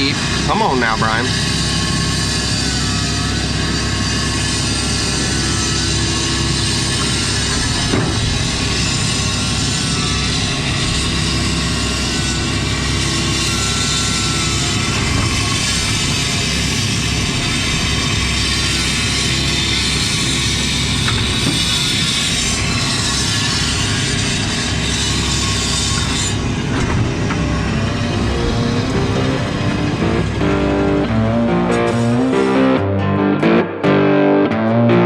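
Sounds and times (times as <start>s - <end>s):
excavator diesel engine running: 0.0s - 34.9s
short wavering whines: 24.4s - 33.0s.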